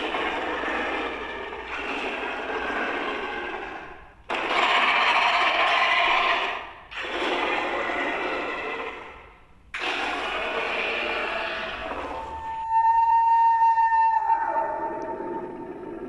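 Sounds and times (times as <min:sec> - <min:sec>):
raspy hissing mouth sounds: 0:09.8 - 0:12.4.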